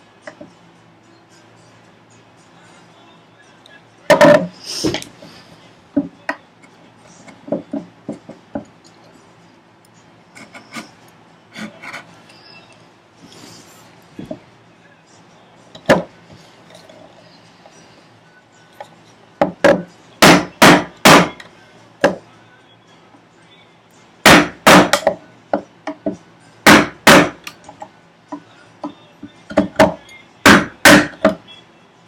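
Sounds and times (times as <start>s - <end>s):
chisel striking wood: 15.8s - 16.1s, 19.4s - 21.4s, 24.3s - 25.2s, 25.9s - 27.4s, 29.5s - 31.4s.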